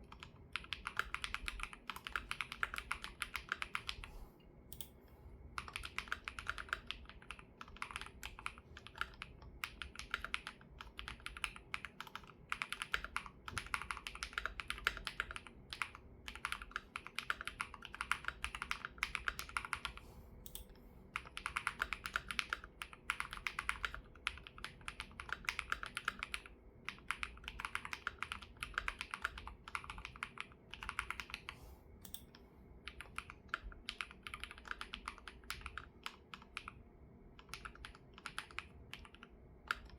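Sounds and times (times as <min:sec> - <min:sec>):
typing on mechanical keyboard: 0:00.0 - 0:04.1, 0:05.6 - 0:32.2, 0:32.9 - 0:36.8, 0:37.4 - 0:39.9.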